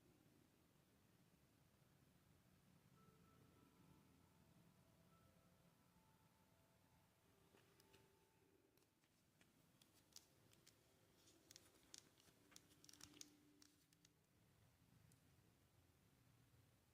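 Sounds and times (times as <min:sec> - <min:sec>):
faint small clicks and ticks: 0:08.7 - 0:14.4.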